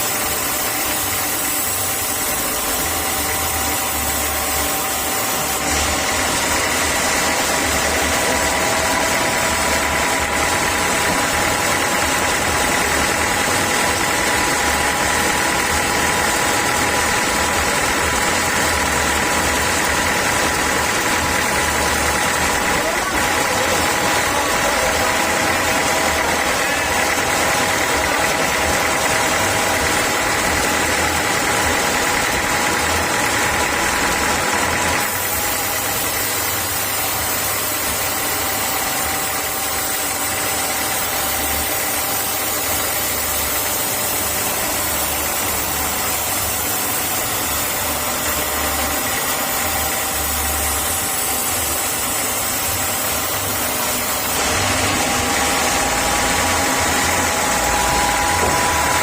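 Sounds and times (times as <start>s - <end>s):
constant mechanical whine: 0.0s - 59.0s
sawmill machinery running: 0.0s - 59.0s.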